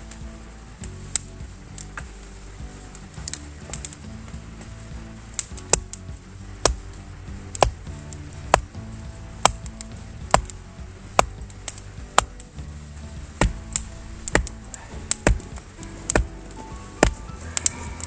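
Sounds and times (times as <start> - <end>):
background music: 0.0 - 18.0
axe chopping firewood: 13.3 - 16.4.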